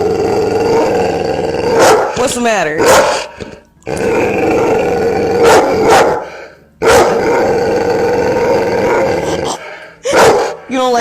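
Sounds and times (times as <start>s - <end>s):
dog growling: 0.0s - 2.2s, 3.1s - 10.2s
dog barking: 1.8s - 2.2s, 2.8s - 3.3s, 5.4s - 7.2s, 10.0s - 10.6s.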